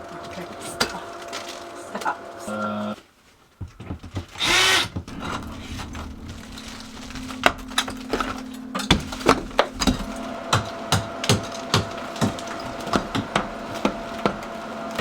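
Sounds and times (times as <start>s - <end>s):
plaster and lath cracking: 3.1s - 15.0s
low steady hum: 5.1s - 15.0s.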